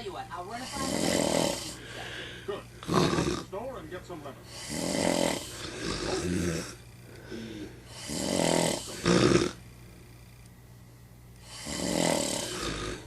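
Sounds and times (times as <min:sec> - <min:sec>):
person snoring heavily: 0:00.5 - 0:03.5, 0:04.5 - 0:09.6, 0:11.4 - 0:13.0.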